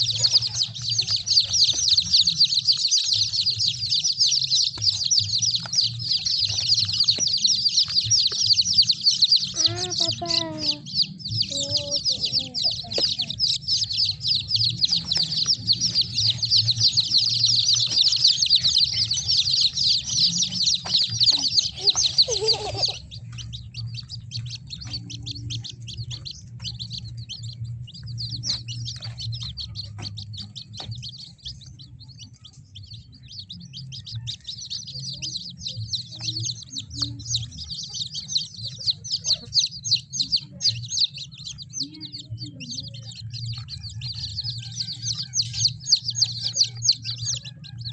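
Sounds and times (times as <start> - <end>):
chicks peeping: 0.0 - 47.9.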